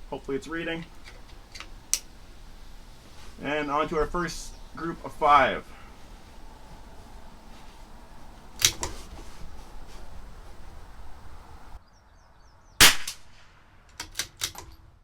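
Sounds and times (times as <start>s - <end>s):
rifle shots: 12.8s - 13.6s.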